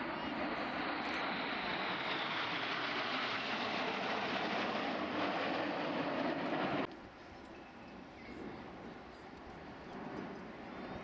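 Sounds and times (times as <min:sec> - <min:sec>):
aircraft engine rushing past: 0:00.0 - 0:06.9.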